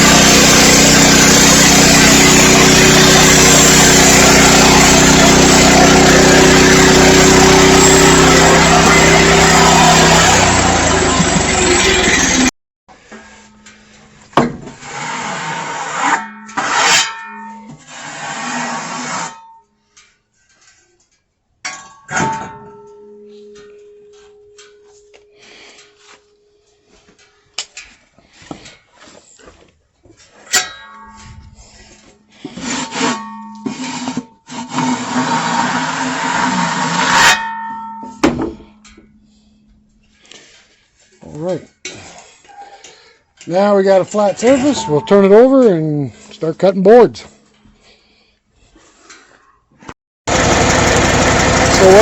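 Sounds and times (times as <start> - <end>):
band saw blade cutting log: 0.0 - 12.5, 14.5 - 19.4, 32.4 - 37.7, 43.5 - 46.7, 50.3 - 52.0.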